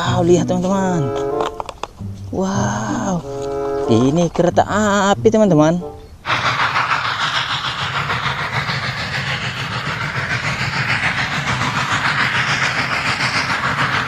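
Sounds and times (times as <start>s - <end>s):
train rushing noise: 6.2s - 14.0s
train wheels clicking over rail joints: 6.3s - 14.0s.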